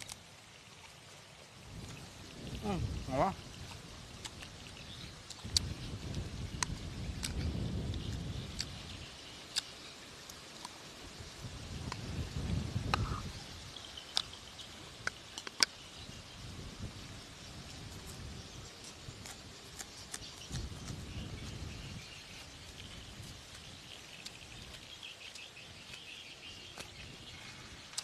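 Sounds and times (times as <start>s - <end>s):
wind rumbling on microphone: 1.5s - 9.4s, 10.9s - 28.0s
birds chirping: 1.8s - 10.0s, 12.8s - 16.6s, 19.8s - 28.0s.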